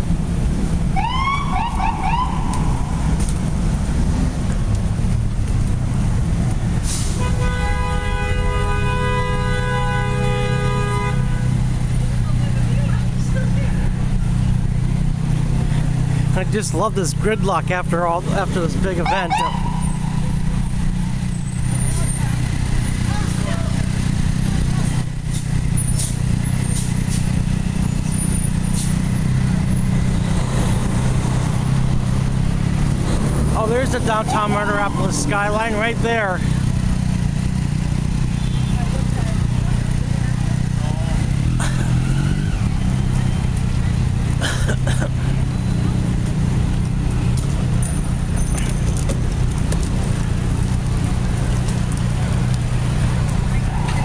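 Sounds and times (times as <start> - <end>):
idling vehicle engines: 0.0 - 54.0
rumble of traffic: 0.0 - 54.0
vehicle horns honking: 6.9 - 12.2, 19.0 - 23.8, 38.2 - 39.0.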